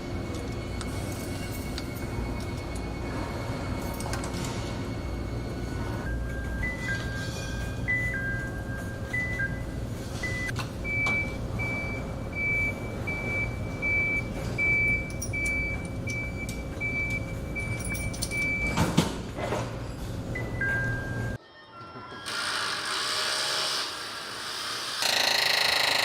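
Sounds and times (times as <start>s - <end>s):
factory machinery hum: 0.0s - 21.4s.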